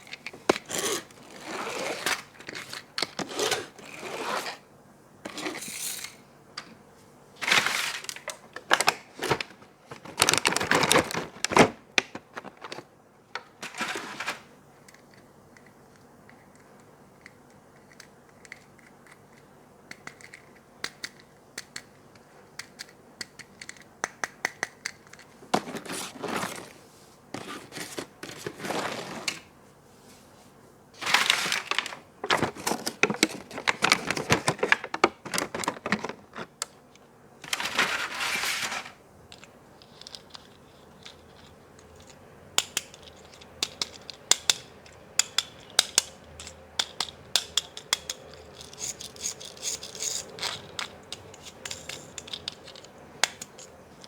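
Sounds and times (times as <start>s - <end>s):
packaging crinkling and tearing: 7.4s - 12.8s, 31.0s - 36.6s, 37.4s - 39.0s.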